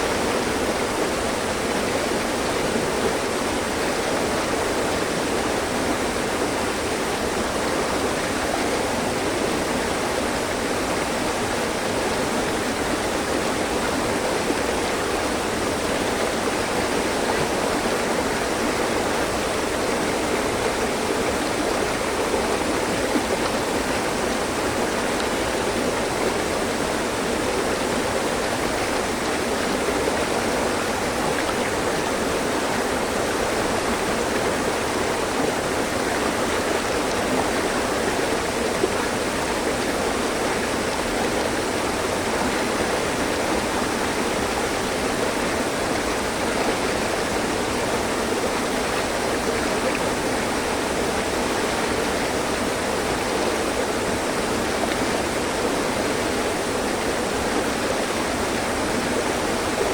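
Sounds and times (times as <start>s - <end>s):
stream flowing over rocks: 0.0s - 59.9s.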